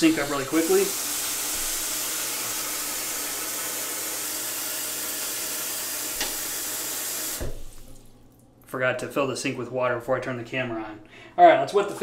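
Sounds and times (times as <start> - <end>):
tap water pouring into sink: 0.0 - 8.4.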